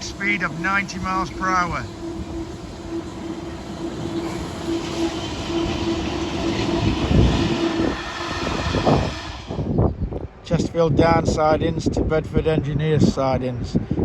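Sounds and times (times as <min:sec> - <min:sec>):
locomotive hum: 0:00.0 - 0:10.5
freight train rumbling past: 0:00.0 - 0:12.7.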